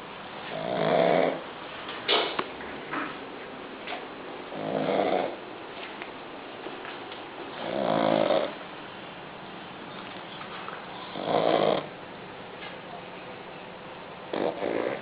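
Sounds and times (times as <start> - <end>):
dog snoring: 0.5 - 1.4, 4.5 - 5.4, 7.5 - 8.6, 10.9 - 12.0, 14.3 - 15.0.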